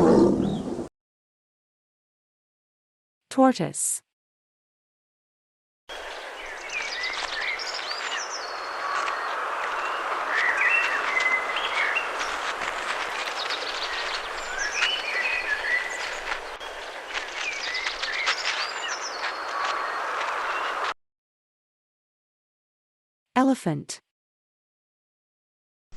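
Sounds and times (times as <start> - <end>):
small birds chirping: 5.9 - 20.9.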